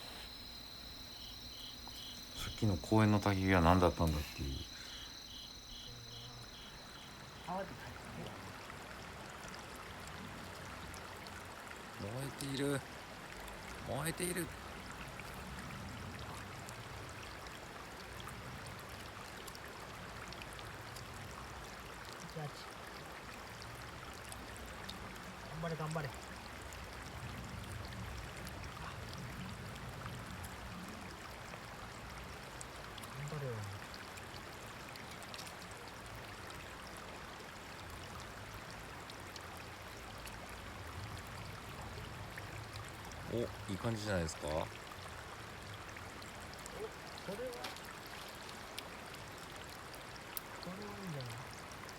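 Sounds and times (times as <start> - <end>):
kindling ticking: 0.0 - 8.4.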